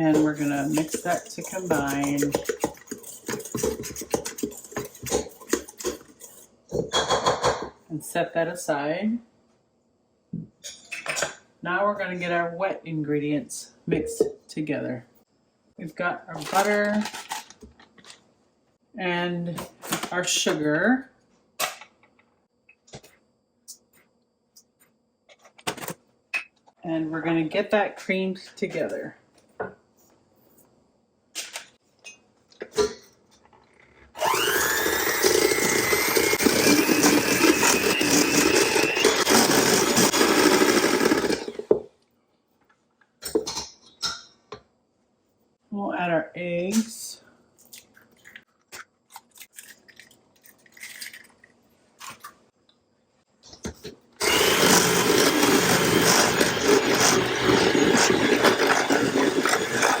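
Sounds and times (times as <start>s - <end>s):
electric mixer motor whining: 34.2s - 41.7s, 54.2s - 60.0s.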